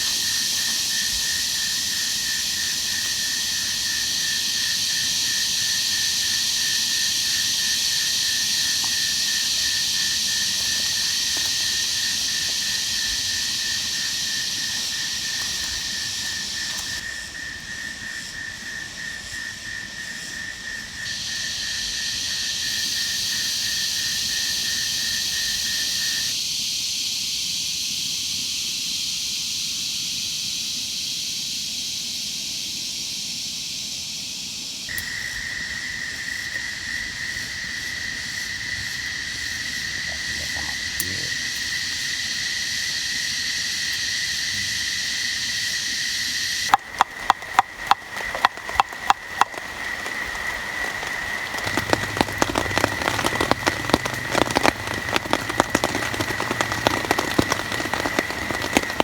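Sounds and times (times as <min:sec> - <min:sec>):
raindrops pattering: 0:00.0 - 0:17.6, 0:46.6 - 0:59.0
frogs and insects chorus: 0:00.0 - 0:59.0.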